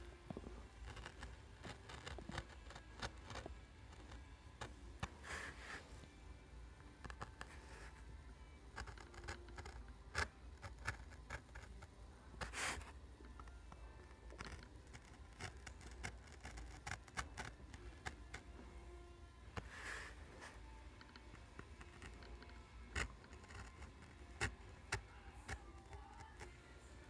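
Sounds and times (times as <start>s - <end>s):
chipboard being cut by hand: 14.3s - 18.4s.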